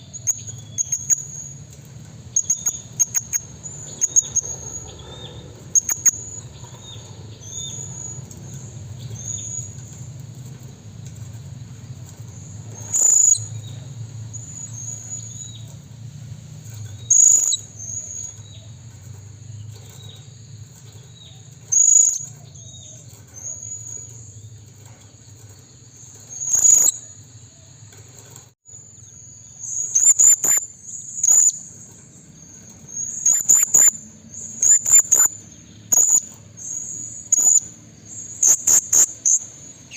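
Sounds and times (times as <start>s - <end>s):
high-pitched chirping trill: 0.0s - 1.7s, 2.3s - 9.8s, 12.4s - 15.6s, 17.0s - 18.6s, 26.1s - 27.2s, 29.2s - 31.7s, 32.9s - 39.9s
parrot shrill calls: 29.7s - 31.6s.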